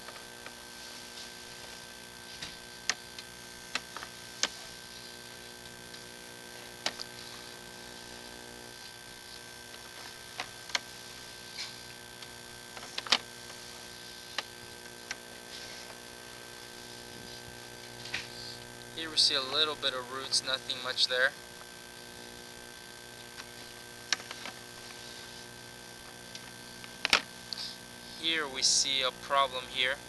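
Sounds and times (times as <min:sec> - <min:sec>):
steady electrical hum: 0:00.0 - 0:30.0.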